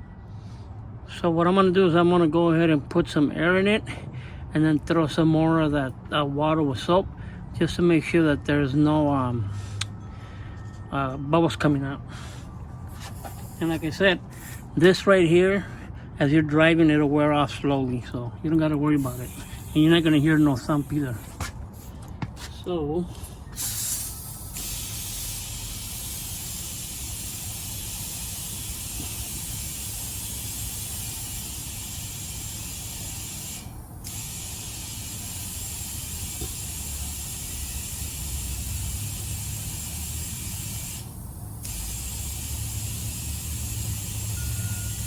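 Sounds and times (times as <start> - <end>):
air hose hissing into tire: 12.9 - 14.7, 19.0 - 22.0, 23.2 - 45.0.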